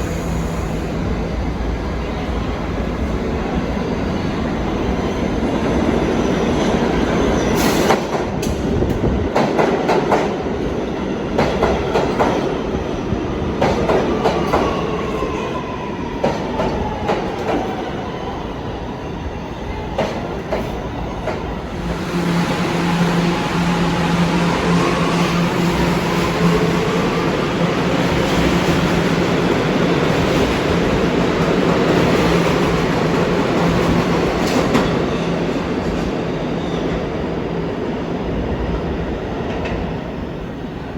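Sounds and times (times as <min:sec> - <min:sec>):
train wheels clacking: 0:11.4 - 0:12.5.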